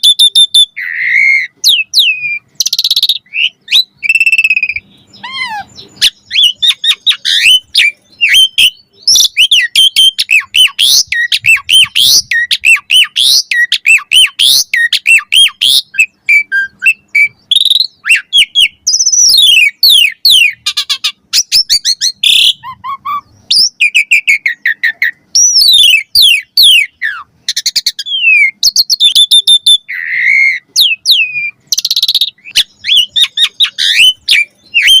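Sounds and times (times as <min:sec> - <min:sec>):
starling singing: 0:00.0 - 0:35.0.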